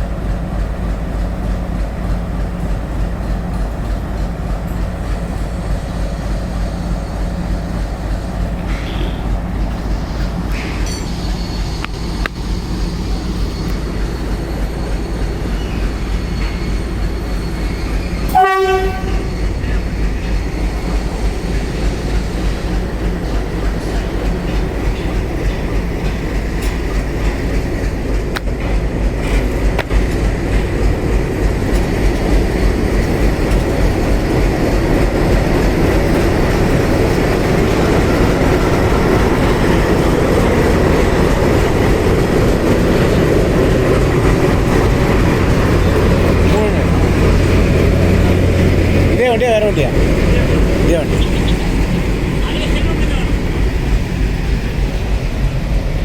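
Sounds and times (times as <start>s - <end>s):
train rumbling on track: 0.0s - 56.0s
locomotive horn blast: 18.3s - 19.4s.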